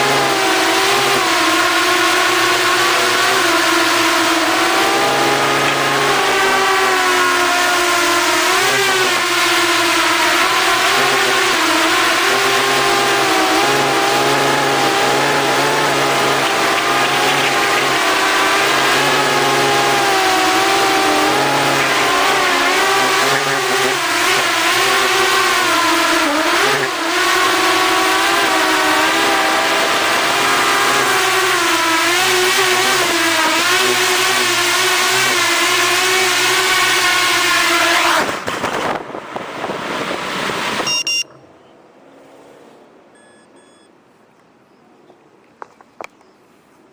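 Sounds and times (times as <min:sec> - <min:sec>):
loud rough rushing noise: 0:00.0 - 0:40.9
drone motors whining: 0:00.0 - 0:43.9
short electronic beeps: 0:40.8 - 0:41.7, 0:43.1 - 0:44.0.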